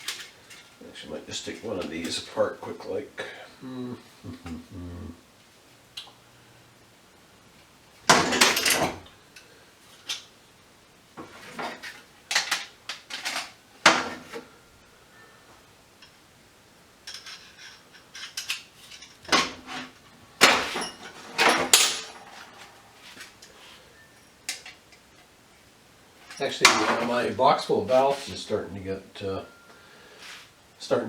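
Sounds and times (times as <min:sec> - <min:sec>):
metal objects clanking: 0:17.1 - 0:22.7, 0:26.2 - 0:27.2.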